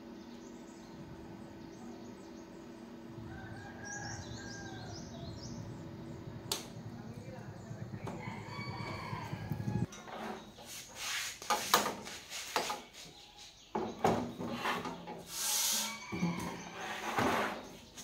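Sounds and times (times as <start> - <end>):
low buzz: 5.0 - 9.9
rubbing and scraping: 9.5 - 13.6, 14.3 - 18.0.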